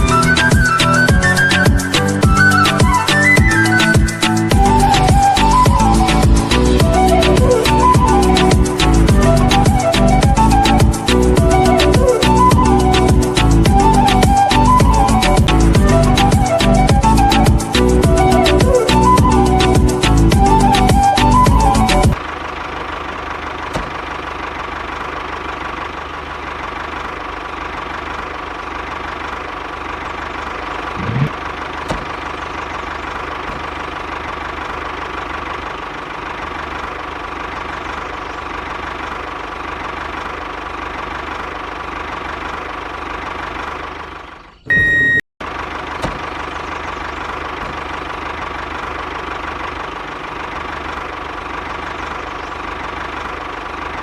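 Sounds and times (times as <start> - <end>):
short high beep: 44.7 - 45.2.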